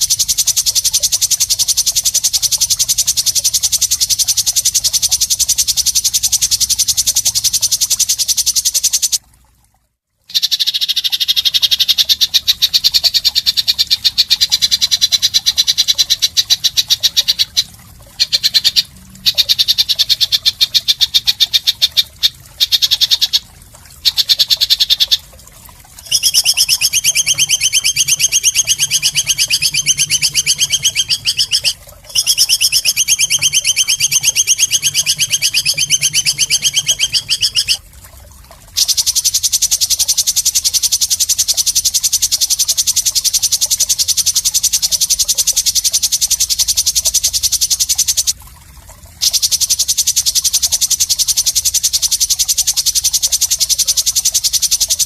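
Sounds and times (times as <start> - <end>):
harsh rattling animal trills: 26.0 - 37.8.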